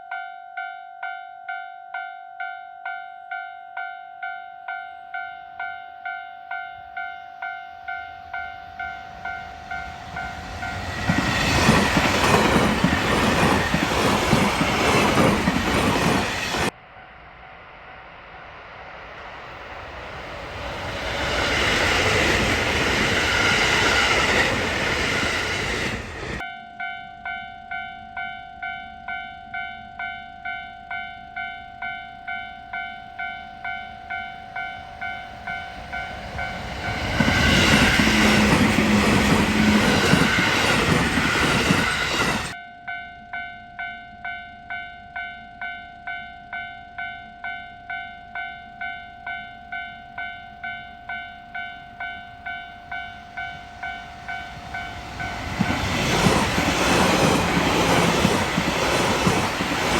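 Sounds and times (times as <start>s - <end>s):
train rushing past: 7.8s - 26.4s, 33.6s - 42.6s, 52.0s - 59.9s
level crossing warning bell: 26.4s - 59.9s.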